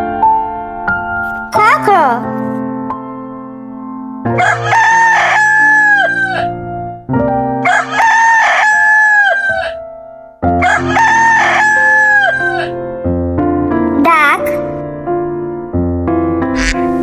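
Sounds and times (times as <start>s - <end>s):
background music: 0.0s - 17.0s
rooster crowing: 4.4s - 6.5s, 7.6s - 9.8s, 10.6s - 12.7s.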